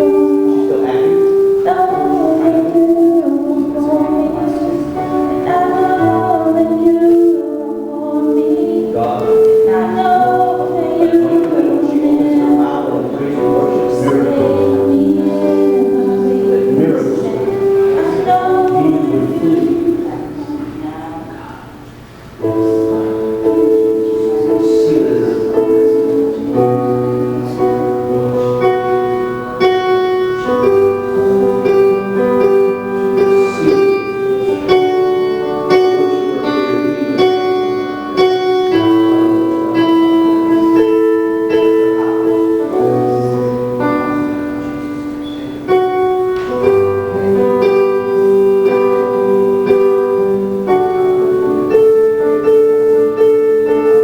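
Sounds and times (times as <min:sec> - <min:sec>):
piano playing slow chords: 0:00.0 - 0:54.0.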